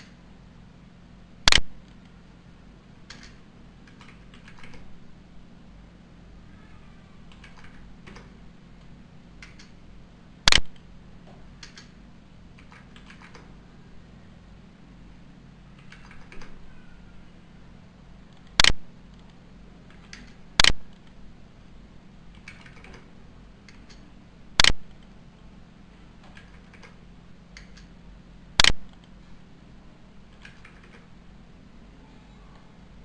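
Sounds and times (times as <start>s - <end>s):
faint low hum: 0.0s - 33.0s
computer keyboard keys clicking: 3.0s - 4.9s, 7.3s - 9.8s, 11.6s - 13.5s, 15.8s - 16.6s, 18.3s - 21.2s, 22.3s - 25.2s, 26.2s - 28.0s, 28.6s - 29.2s, 30.3s - 31.1s.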